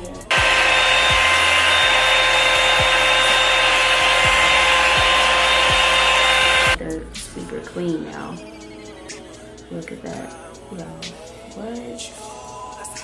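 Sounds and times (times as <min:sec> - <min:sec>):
hair dryer running: 0:00.0 - 0:06.8.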